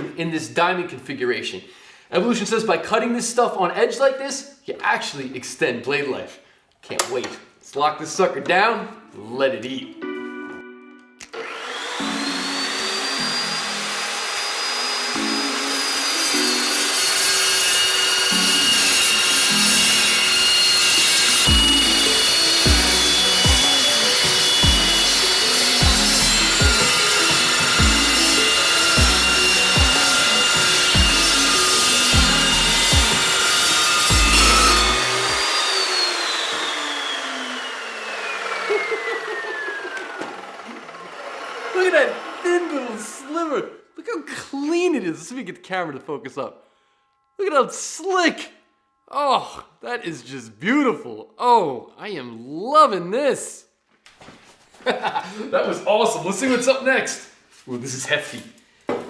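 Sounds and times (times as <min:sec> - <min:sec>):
metal chop saw whining: 0:11.3 - 0:43.8.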